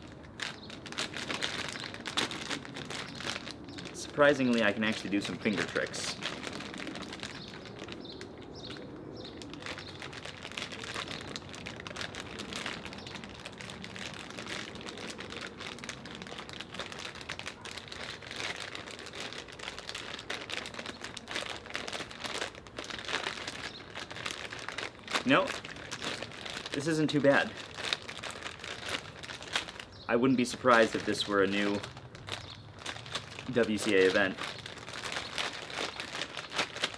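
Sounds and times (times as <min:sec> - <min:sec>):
plastic bag crinkling: 0:00.0 - 0:36.9.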